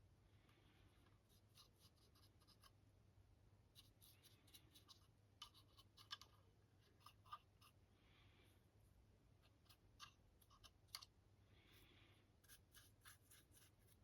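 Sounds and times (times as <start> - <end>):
faint low hum: 0.0 - 14.0
paintbrush strokes: 0.8 - 2.8, 3.7 - 6.2, 11.6 - 14.0.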